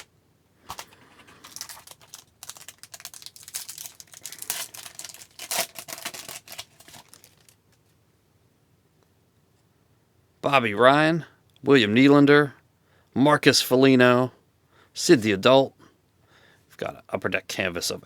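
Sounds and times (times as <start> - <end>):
wrapper crinkling and tearing: 0.7 - 7.6.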